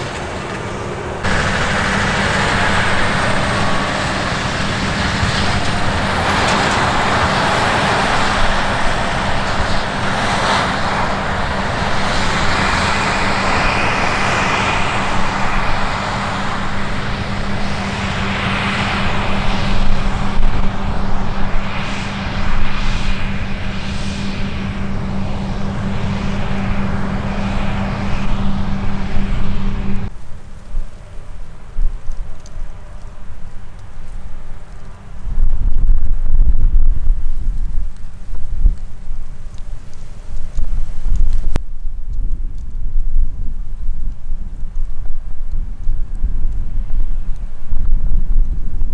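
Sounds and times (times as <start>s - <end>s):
diesel machinery running under load: 0.0s - 30.1s.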